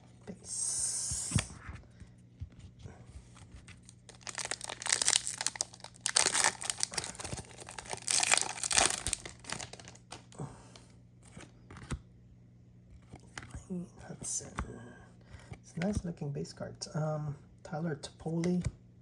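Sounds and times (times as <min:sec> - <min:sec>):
foil wrapper tearing and crinkling: 0:03.8 - 0:10.2.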